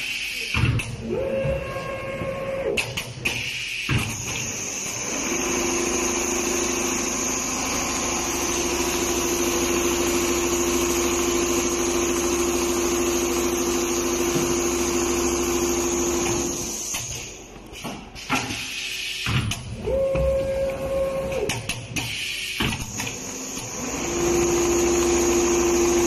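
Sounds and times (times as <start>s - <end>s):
sewing machine motor humming: 4.8s - 16.8s, 23.1s - 26.0s.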